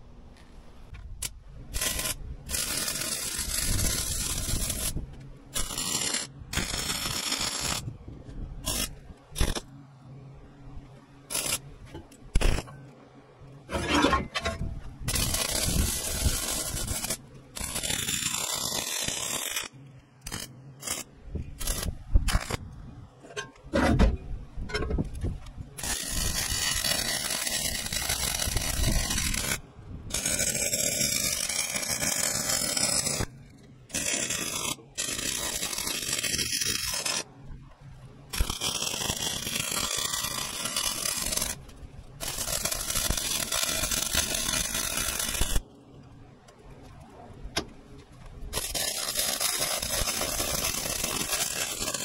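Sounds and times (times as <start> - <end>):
welding arc hissing: 1.2 - 7.9, 8.6 - 9.7, 11.3 - 12.7, 15.1 - 22.6, 25.8 - 33.3, 33.9 - 37.3, 38.3 - 45.6, 48.5 - 52.0.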